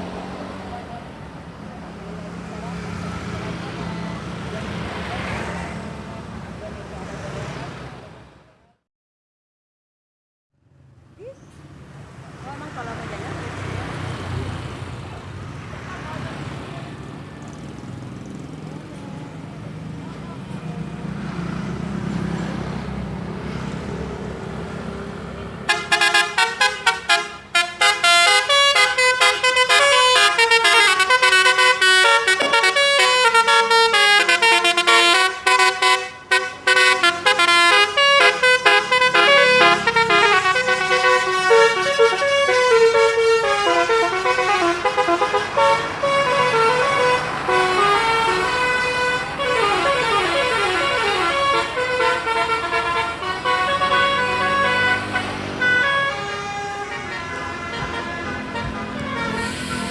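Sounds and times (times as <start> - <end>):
bus engine rumble: 0.0 - 8.8, 10.7 - 59.9
multi-tone musical bus horn: 25.6 - 59.9.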